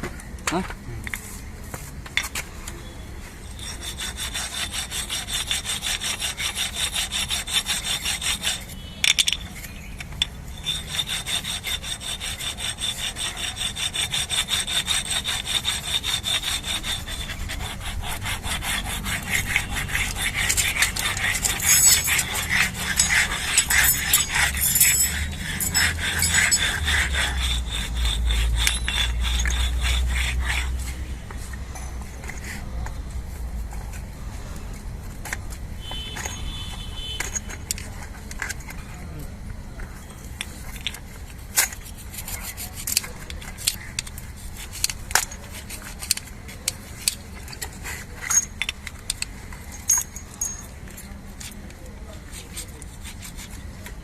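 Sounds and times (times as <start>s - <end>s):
rapid hand abrading strokes: 10.5s - 31.5s.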